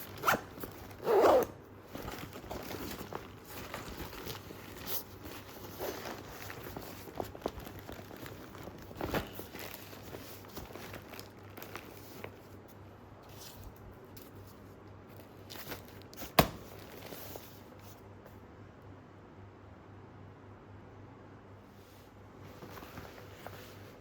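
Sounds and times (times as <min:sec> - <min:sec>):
nylon bag rustling: 0:00.0 - 0:14.4, 0:15.1 - 0:17.7.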